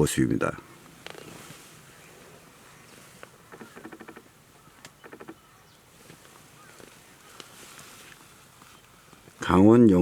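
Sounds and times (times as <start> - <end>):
bird chattering call: 3.4 - 5.8.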